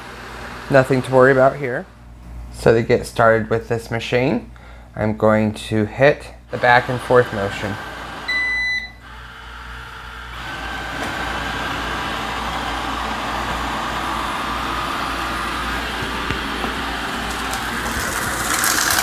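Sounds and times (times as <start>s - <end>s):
vacuum suction fan and brushes: 0.0s - 1.9s, 6.5s - 19.0s
robot vacuum beep: 8.3s - 9.0s.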